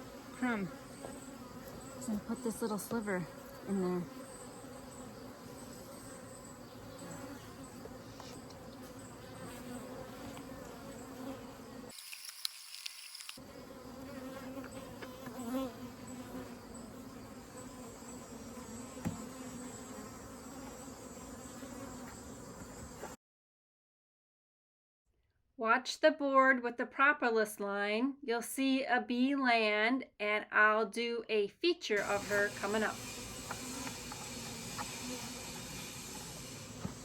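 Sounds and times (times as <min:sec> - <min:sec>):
honeybees buzzing: 0:00.0 - 0:23.2, 0:32.0 - 0:37.0.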